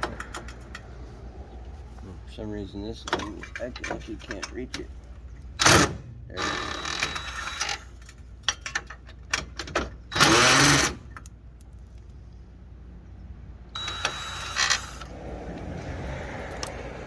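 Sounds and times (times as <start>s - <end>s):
cordless drill spinning: 6.4s - 7.9s, 13.8s - 15.1s.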